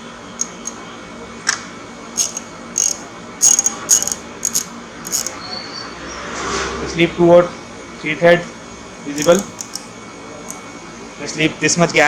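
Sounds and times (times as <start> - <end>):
metallic clicks of adjuster turning: 0.4 - 0.8, 2.2 - 5.4, 9.2 - 9.9.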